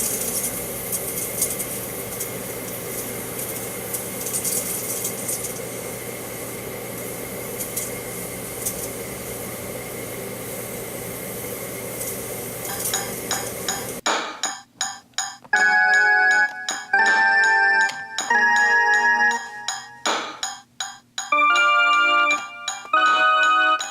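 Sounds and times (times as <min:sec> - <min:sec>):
crackling and sizzling: 0:00.0 - 0:14.0
microwave oven humming: 0:00.0 - 0:14.0, 0:15.6 - 0:20.0, 0:21.0 - 0:23.9.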